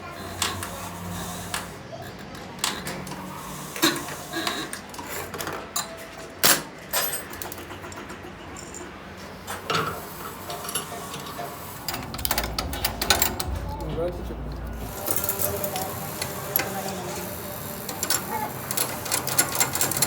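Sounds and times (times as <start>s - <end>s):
metal tools clinking: 6.9s - 20.0s.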